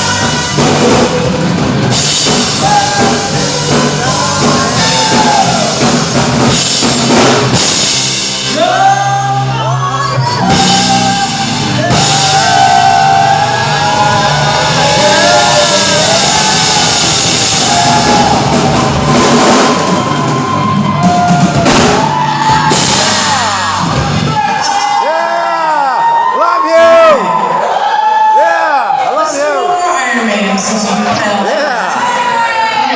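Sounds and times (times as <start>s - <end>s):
electric guitars: 0.0s - 25.1s
drum kit: 0.0s - 26.2s
person singing long notes: 2.4s - 6.1s, 8.5s - 18.4s.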